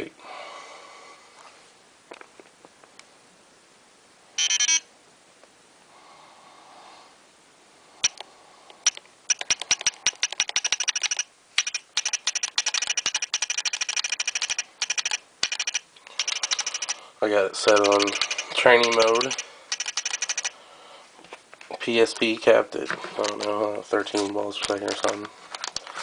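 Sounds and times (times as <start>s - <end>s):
brief electronic tone: 4.4s - 4.9s.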